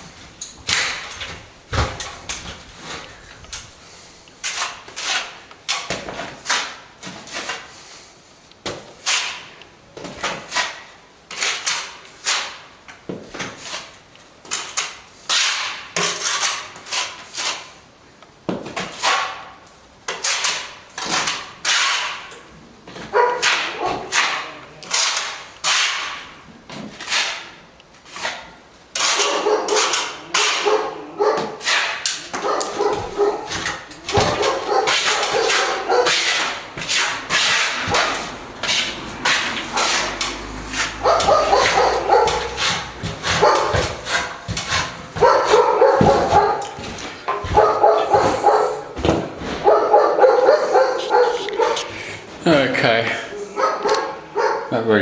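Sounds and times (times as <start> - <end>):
dog barking: 23.1 - 24.6, 29.1 - 36.6, 37.7 - 38.2, 40.7 - 44.4, 45.2 - 49.0, 49.6 - 51.9, 53.5 - 54.8.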